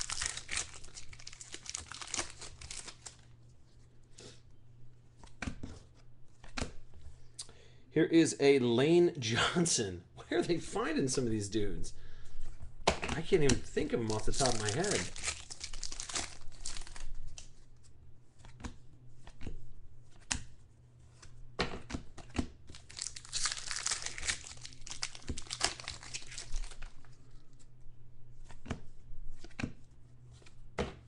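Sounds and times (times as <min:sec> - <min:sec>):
foil wrappers tearing and crinkling: 0:00.0 - 0:03.2, 0:13.8 - 0:17.4, 0:22.7 - 0:27.0.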